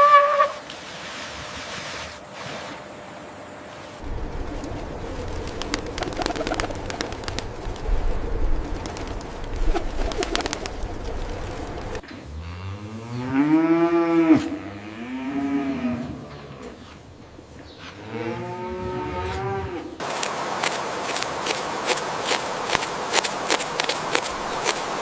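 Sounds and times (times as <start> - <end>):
soft low calls: 4.0 - 12.0
cow mooing: 12.2 - 16.8, 18.0 - 19.9.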